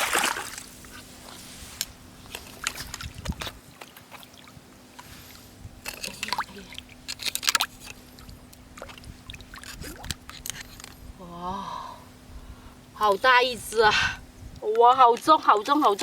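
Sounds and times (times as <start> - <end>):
water splashing: 0.0 - 11.0
water trickling and sloshing: 0.0 - 11.2
scrapes and clicks in sand: 0.4 - 3.6.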